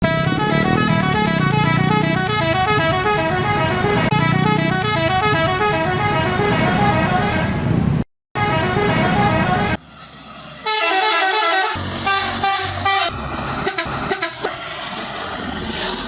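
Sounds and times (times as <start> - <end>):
musical bus horn playing tune: 0.0 - 7.6, 8.4 - 9.8, 10.6 - 14.6.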